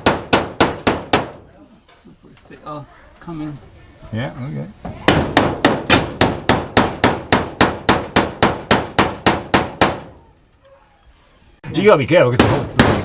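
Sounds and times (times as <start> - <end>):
hammer striking nail: 0.0 - 1.4, 5.1 - 10.1, 12.4 - 13.0.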